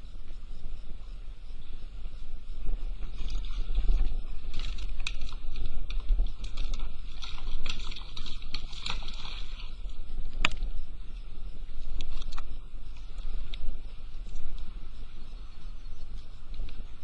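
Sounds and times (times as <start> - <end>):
wind rumbling on microphone: 0.0 - 17.0
water lapping against boat hull: 2.6 - 10.7.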